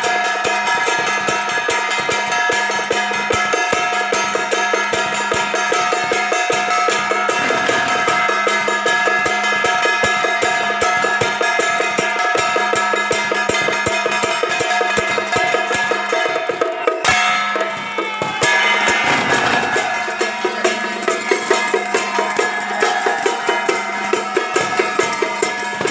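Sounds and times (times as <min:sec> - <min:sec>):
percussion band drumming: 0:00.0 - 0:25.9
ringing metallic tone: 0:04.3 - 0:11.9
sharp loud drum hit: 0:07.3 - 0:08.8.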